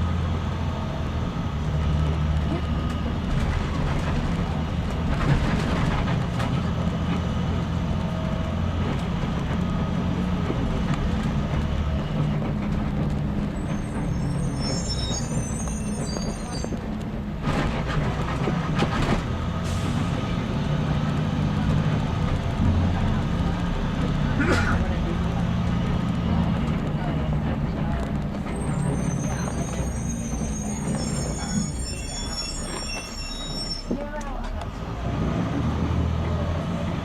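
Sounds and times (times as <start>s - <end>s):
bus engine droning: 0.0s - 37.0s
high squeal: 13.6s - 16.9s, 28.4s - 34.6s.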